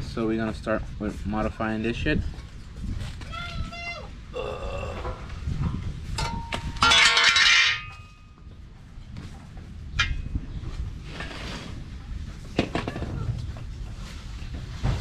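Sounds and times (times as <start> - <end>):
metal parts clanging: 6.2 - 8.4, 10.0 - 10.3.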